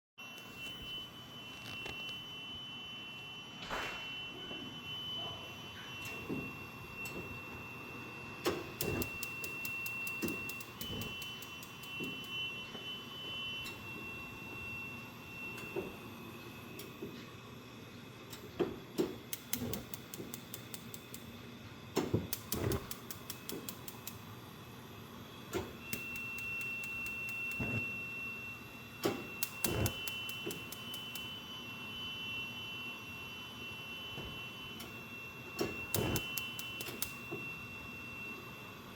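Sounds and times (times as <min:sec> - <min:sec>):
steady high-pitched tone: 0:00.2 - 0:17.6
spark igniter clicking: 0:08.4 - 0:12.3, 0:19.0 - 0:21.3, 0:22.0 - 0:24.2, 0:25.5 - 0:27.8, 0:29.0 - 0:31.3, 0:35.6 - 0:37.4.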